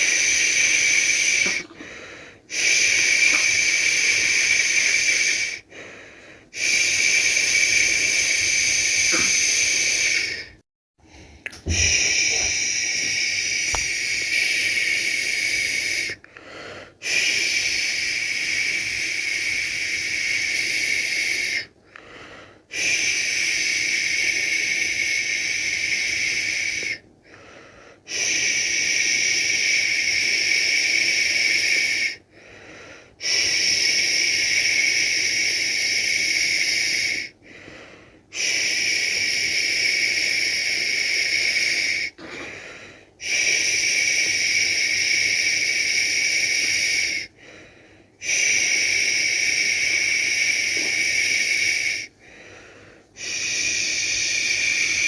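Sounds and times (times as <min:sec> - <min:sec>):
person shushing: 0:07.2 - 0:10.5, 0:11.5 - 0:16.2.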